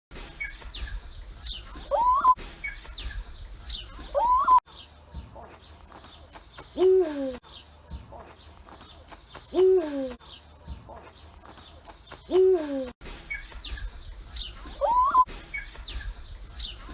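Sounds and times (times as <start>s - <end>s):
small birds chirping faintly: 0.2s - 16.9s
owl calling: 0.4s - 4.6s, 13.3s - 16.9s.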